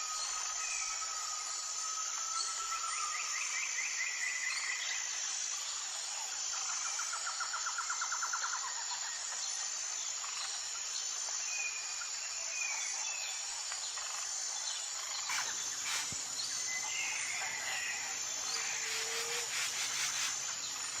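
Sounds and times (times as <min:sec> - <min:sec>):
high-pitched insect trill: 0:00.0 - 0:21.0
birds chirping: 0:15.2 - 0:20.9.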